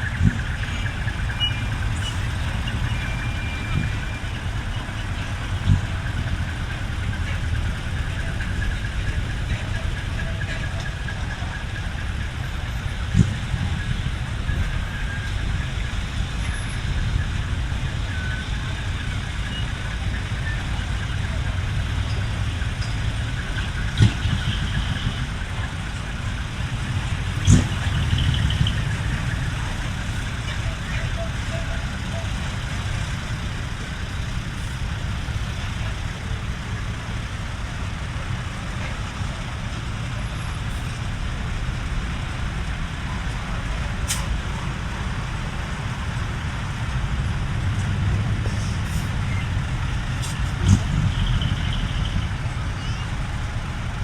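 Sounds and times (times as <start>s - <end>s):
truck engines idling: 0.0s - 54.0s.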